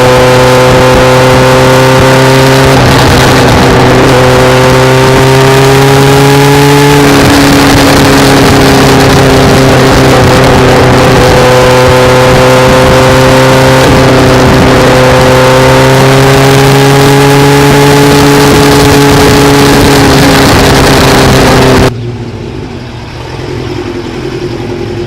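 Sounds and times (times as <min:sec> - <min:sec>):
motorcycle engine running: 0:00.0 - 0:25.0
steady rushing noise: 0:00.0 - 0:25.0.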